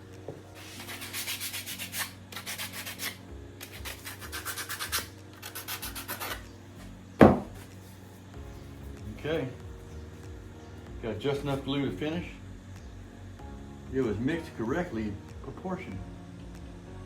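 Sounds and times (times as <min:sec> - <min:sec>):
rubbing strokes on wood: 0:00.6 - 0:03.2.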